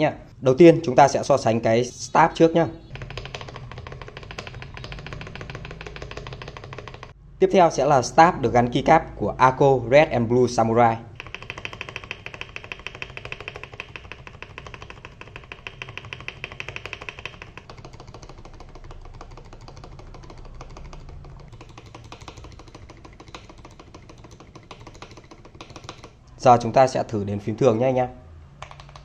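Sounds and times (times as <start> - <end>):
mechanical keyboard keys clacking: 2.9 - 7.2, 11.2 - 26.3, 28.6 - 29.0.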